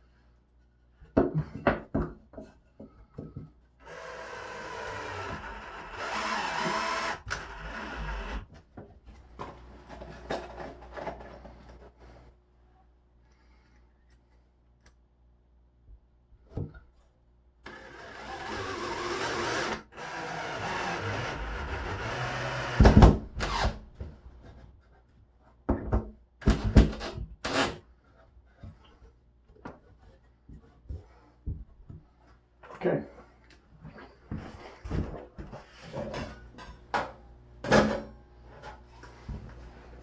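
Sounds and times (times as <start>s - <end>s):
cordless drill running: 3.8s - 8.4s, 17.6s - 23.8s.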